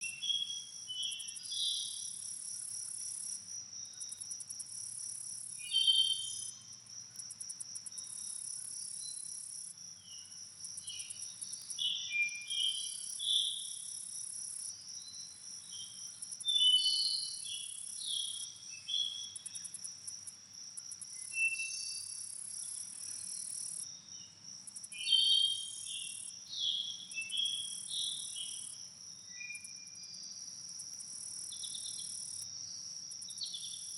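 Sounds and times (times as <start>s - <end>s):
songbirds chirping and whistling: 0.0s - 2.1s, 5.6s - 6.6s, 10.9s - 13.8s, 15.0s - 19.4s, 21.2s - 22.2s, 25.0s - 28.7s
crickets trilling: 0.0s - 33.9s.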